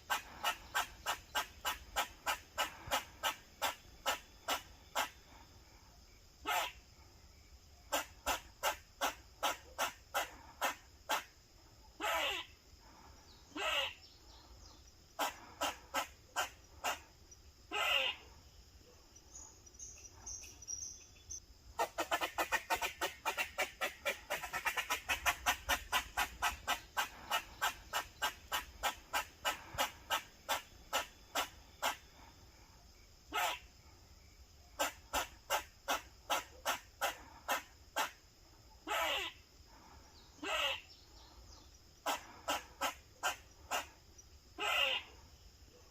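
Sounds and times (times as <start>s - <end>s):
squirrel alarm barking: 6.4s - 6.8s, 7.9s - 11.3s, 12.0s - 12.5s, 13.6s - 14.0s, 15.2s - 17.0s, 17.7s - 18.3s, 33.3s - 33.7s, 34.8s - 38.2s, 38.8s - 39.4s, 40.4s - 40.8s, 42.0s - 44.0s, 44.6s - 45.1s.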